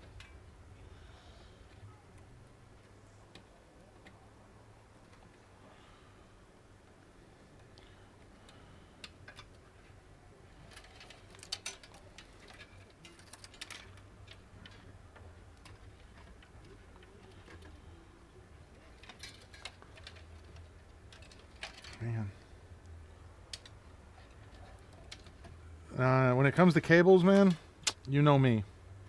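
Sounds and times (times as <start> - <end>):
faint low hum: 0.0 - 29.0
plastic cable connectors clicking: 22.8 - 25.6.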